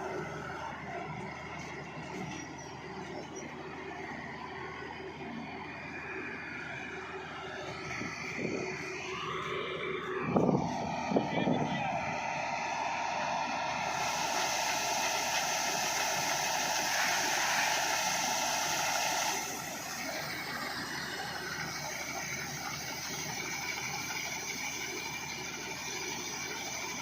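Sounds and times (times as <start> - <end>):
harvesting machine hissing: 5.7 - 27.0.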